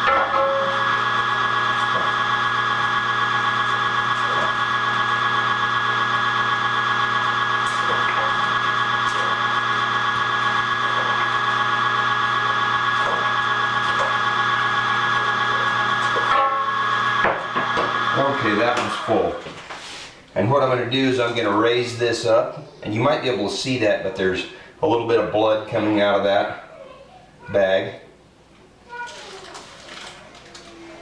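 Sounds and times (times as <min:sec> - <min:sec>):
electric meat grinder running: 0:00.0 - 0:19.6.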